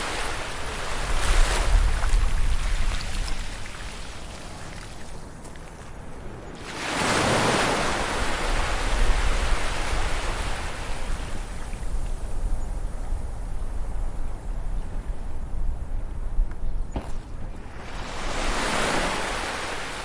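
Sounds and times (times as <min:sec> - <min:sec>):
ocean wave breaking: 0:17.6 - 0:20.0.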